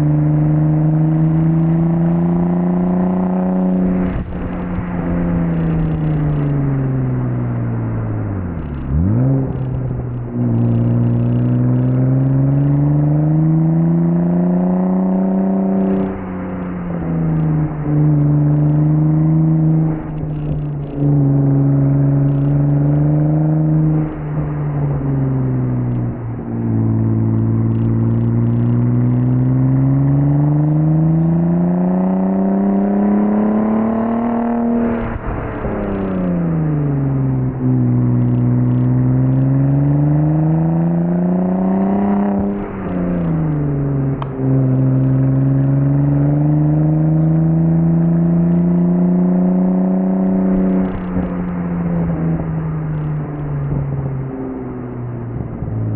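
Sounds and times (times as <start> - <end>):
car engine revving: 0.0 - 55.9.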